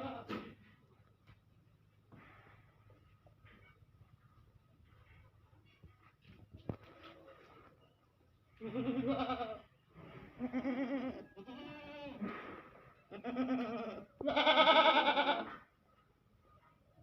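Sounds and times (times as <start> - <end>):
goat bleating: 0.0 - 0.5, 8.6 - 9.7, 10.4 - 12.3, 13.1 - 15.6.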